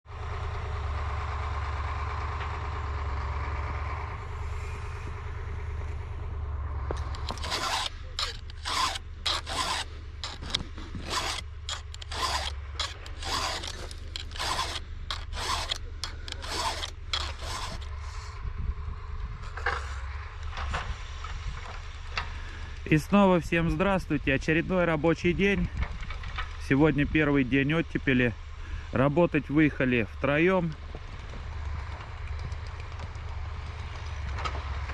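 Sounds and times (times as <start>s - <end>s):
low engine hum: 0.1s - 34.9s
short scraping strokes: 6.9s - 18.4s.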